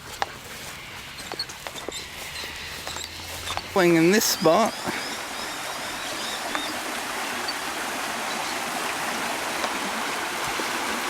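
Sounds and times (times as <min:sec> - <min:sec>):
creek water rushing: 0:00.0 - 0:11.0.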